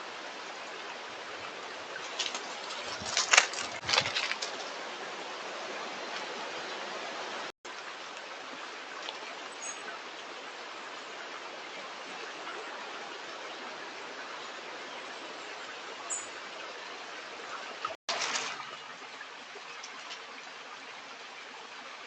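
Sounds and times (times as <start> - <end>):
stream running: 0.0 - 22.0
bird wings flapping: 2.0 - 4.8.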